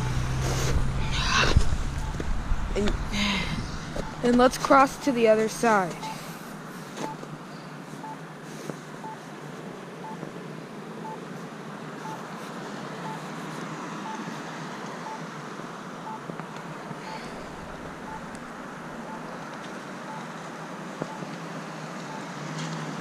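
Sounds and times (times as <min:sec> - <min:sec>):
road traffic noise: 0:00.0 - 0:23.0
short high beeps: 0:05.9 - 0:06.3, 0:17.1 - 0:18.3.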